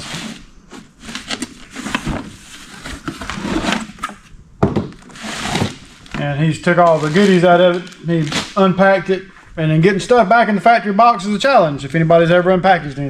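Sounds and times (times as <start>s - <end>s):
cardboard packaging rustling: 0.0s - 9.6s.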